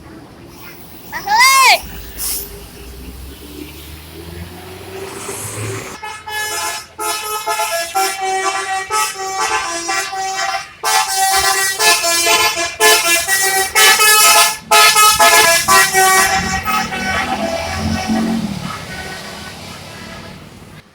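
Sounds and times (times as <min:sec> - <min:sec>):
low engine rumble: 0:00.0 - 0:20.9
multi-tone bus horn playing tune: 0:05.0 - 0:20.8.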